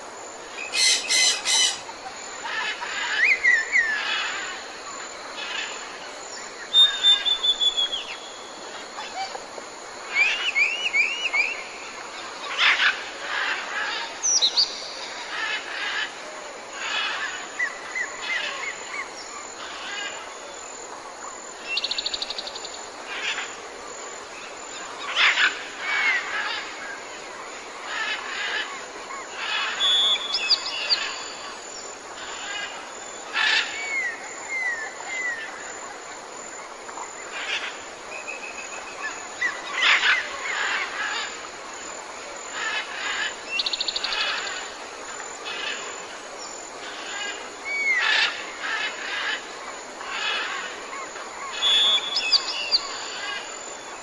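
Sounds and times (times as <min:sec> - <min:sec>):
steady background hiss: 0:00.0 - 0:54.0
harsh bird calls: 0:00.6 - 0:01.9
whistled bird notes: 0:06.7 - 0:08.4.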